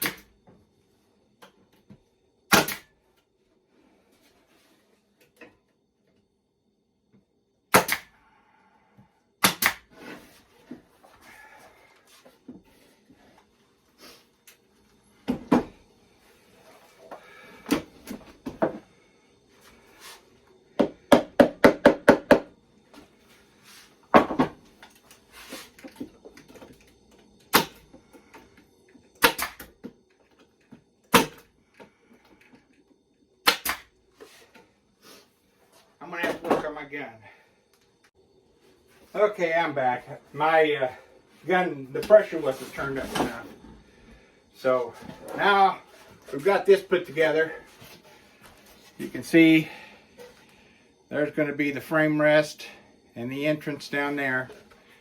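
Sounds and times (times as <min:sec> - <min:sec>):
pneumatic nail gun shots: 0:00.0 - 0:00.3, 0:02.5 - 0:02.9, 0:07.7 - 0:08.2, 0:09.4 - 0:09.9, 0:27.5 - 0:27.8, 0:29.2 - 0:29.8, 0:31.1 - 0:31.5, 0:33.4 - 0:33.9.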